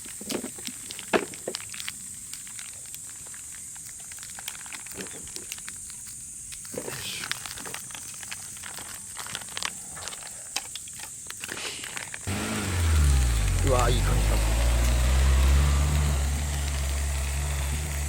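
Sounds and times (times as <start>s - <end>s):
campfire crackling and popping: 0.0s - 18.0s
fire hissing: 11.4s - 18.0s.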